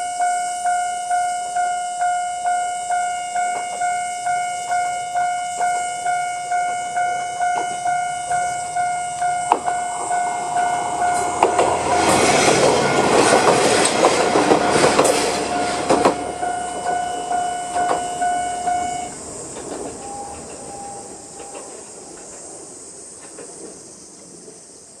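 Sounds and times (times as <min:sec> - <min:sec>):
level-crossing warning bell: 0:00.0 - 0:22.2
train wheels clattering: 0:03.4 - 0:24.8.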